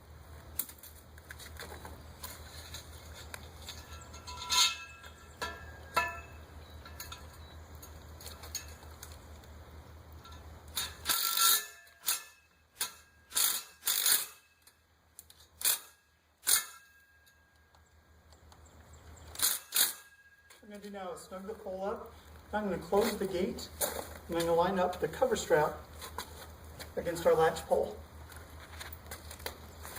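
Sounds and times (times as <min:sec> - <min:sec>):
metallic clicks and clinks: 0:03.6 - 0:09.2.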